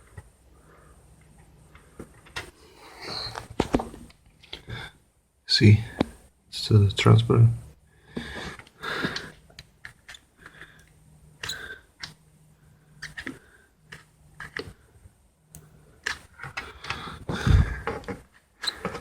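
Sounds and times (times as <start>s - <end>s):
faint low hum: 0.0s - 19.0s
clicks and rustling handling noise: 13.0s - 14.8s.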